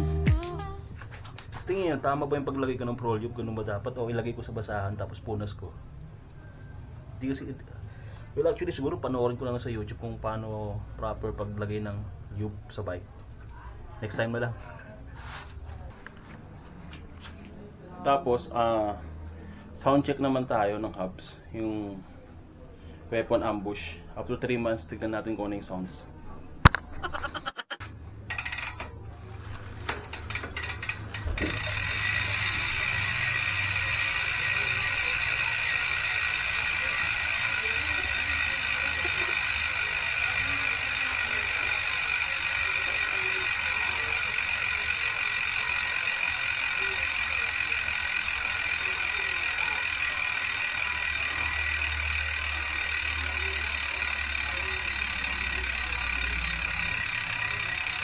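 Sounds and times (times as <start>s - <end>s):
bicycle freewheel ratcheting: 28.1s - 58.0s.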